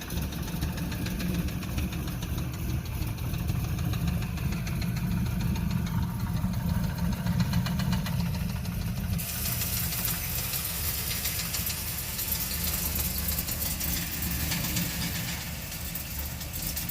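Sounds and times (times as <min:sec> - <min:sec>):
car engine idling with knock: 0:00.0 - 0:16.9
high hiss: 0:09.2 - 0:16.7.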